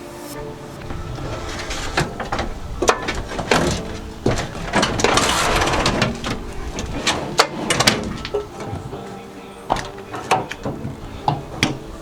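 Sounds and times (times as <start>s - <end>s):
scraping rush: 4.0s - 7.4s.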